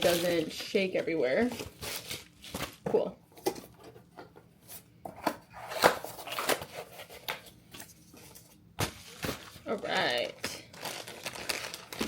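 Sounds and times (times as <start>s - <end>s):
packaging rustling: 5.6s - 12.0s.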